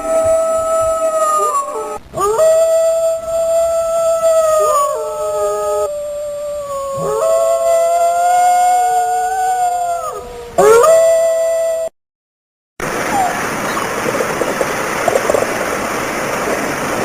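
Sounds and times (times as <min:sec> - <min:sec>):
dogs howling: 0:00.0 - 0:03.1, 0:03.8 - 0:11.2, 0:13.0 - 0:14.0.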